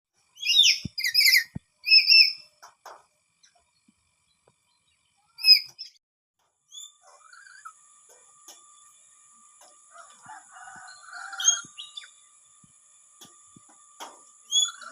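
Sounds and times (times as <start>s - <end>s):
faint bird calls: 6.7s - 7.8s.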